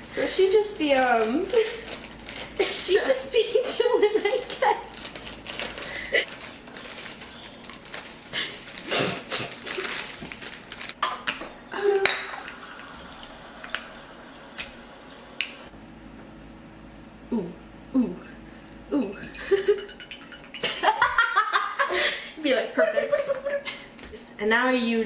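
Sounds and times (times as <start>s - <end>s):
dishes and utensils clinking: 11.0s - 12.7s.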